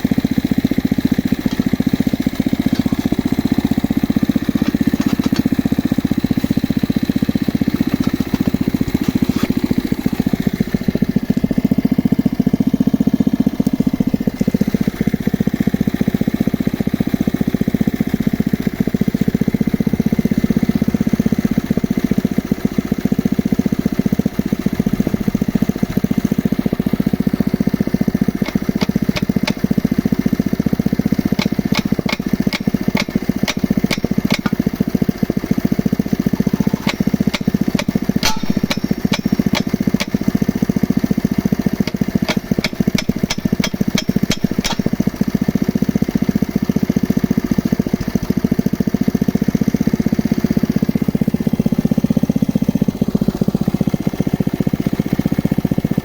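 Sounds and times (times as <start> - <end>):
drilling rig engine running: 0.0 - 56.0
sharp clicks: 28.4 - 29.6, 31.4 - 34.6, 36.7 - 40.3, 41.9 - 45.0.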